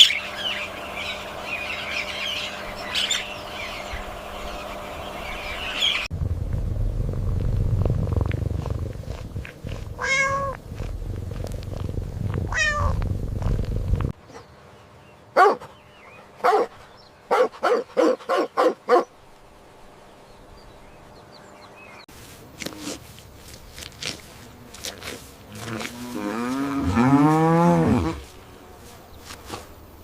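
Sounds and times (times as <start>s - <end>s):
cat purring: 6.1s - 14.1s
cat meowing: 10.0s - 10.6s, 12.5s - 13.0s.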